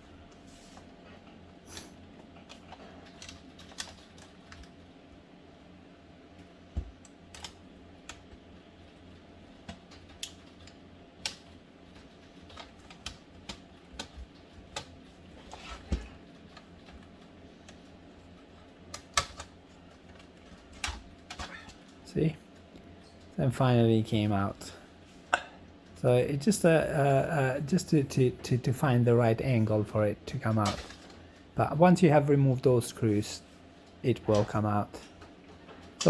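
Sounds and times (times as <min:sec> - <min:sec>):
plastic laptop parts clicking: 0:02.4 - 0:04.8, 0:18.9 - 0:21.8.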